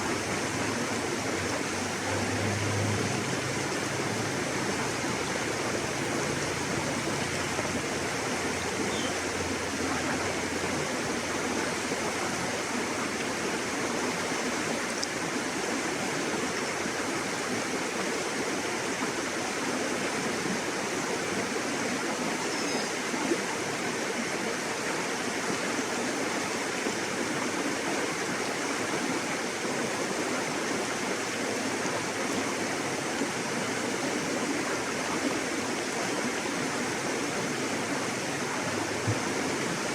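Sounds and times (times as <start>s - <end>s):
river water flowing: 0.0s - 39.9s.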